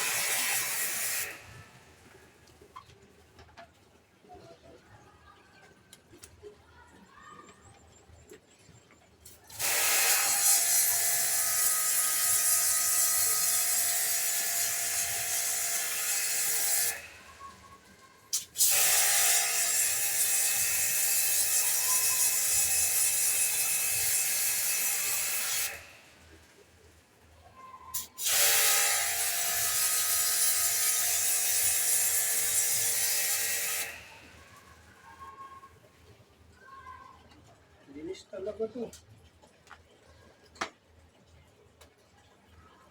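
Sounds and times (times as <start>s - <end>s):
pressure washer spraying: 0.0s - 1.4s, 18.3s - 25.9s.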